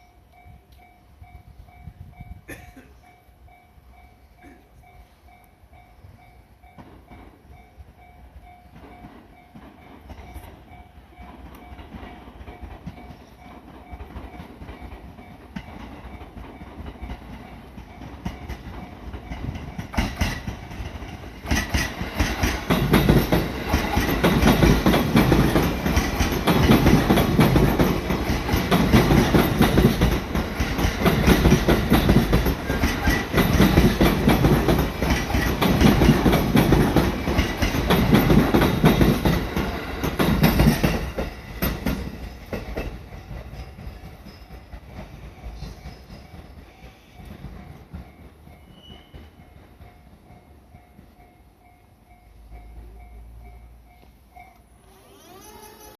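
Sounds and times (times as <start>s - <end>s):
electric train passing: 0.0s - 55.9s
wheels clattering over rail joints: 8.8s - 50.5s.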